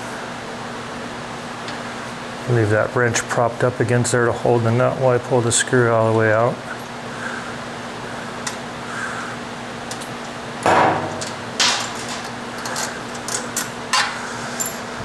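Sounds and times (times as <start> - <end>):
fan humming: 0.0 - 15.0
metal tools clanking: 9.9 - 14.9.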